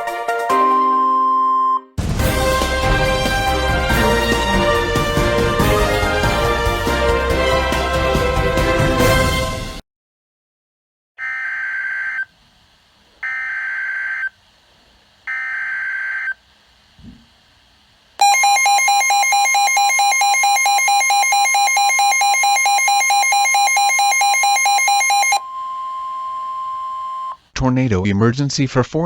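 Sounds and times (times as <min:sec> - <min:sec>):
shrill digital data tones: 0:18.2 - 0:27.4
steady high tone: 0:18.2 - 0:27.4.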